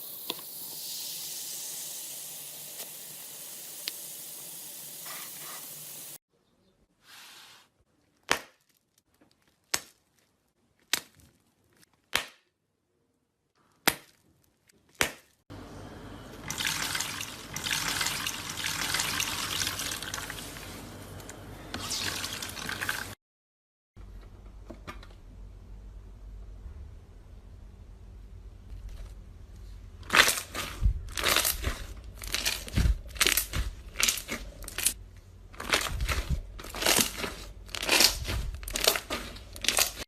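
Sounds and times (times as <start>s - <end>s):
slime squishing: 30.0s - 40.0s.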